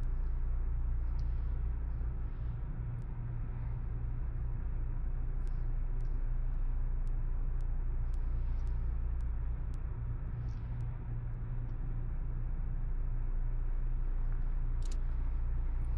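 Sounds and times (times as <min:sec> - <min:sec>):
faint ticks: 0:01.0 - 0:01.4, 0:05.4 - 0:06.3, 0:07.0 - 0:11.9, 0:14.2 - 0:15.2.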